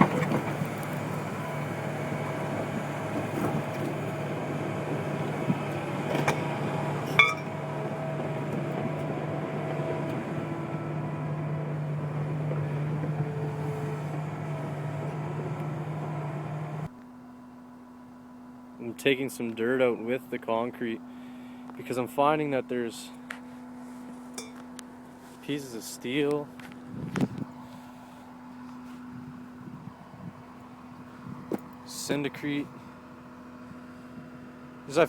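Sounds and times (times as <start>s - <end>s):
diesel engine humming: 0.0s - 35.0s
sharp metal clanks: 7.1s - 7.5s, 24.4s - 24.6s.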